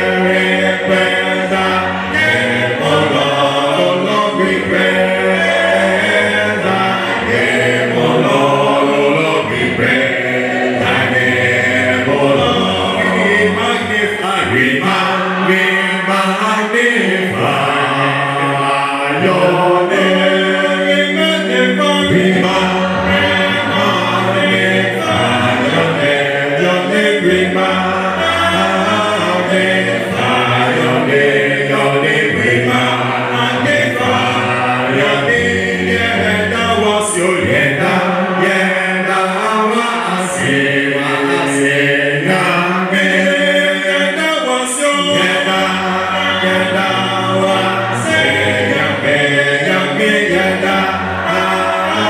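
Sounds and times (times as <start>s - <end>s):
voices singing in harmony: 0.0s - 52.0s.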